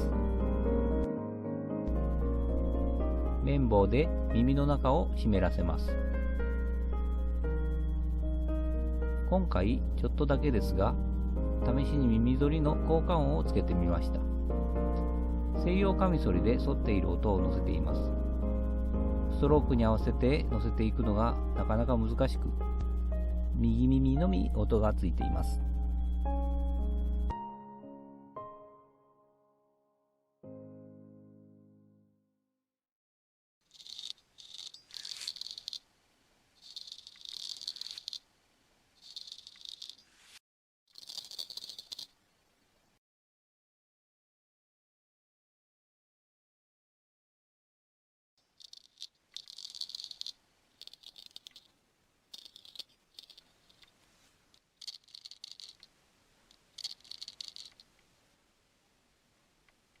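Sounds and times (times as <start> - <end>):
straight razor scraping: 33.7 - 35.8, 36.6 - 38.3, 39.0 - 42.2, 48.6 - 55.9, 56.5 - 57.9.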